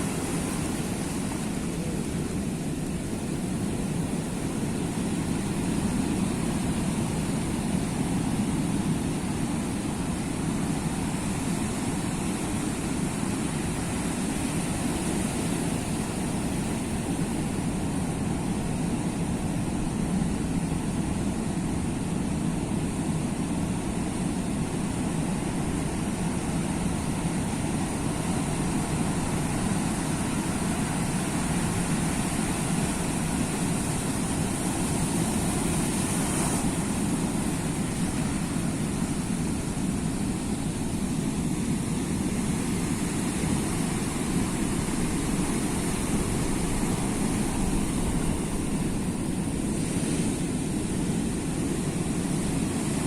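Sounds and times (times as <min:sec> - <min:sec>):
sea waves rushing: 0:00.0 - 0:53.0.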